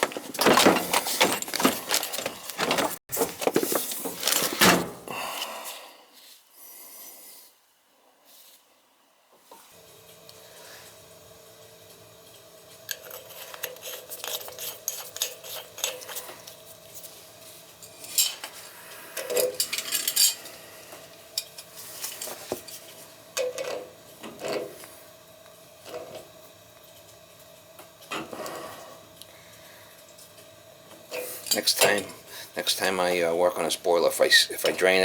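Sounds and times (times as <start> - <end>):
metal parts and tools clinking: 0.0 - 3.0, 17.8 - 18.6, 19.2 - 20.5
faint steady hum: 0.0 - 35.0.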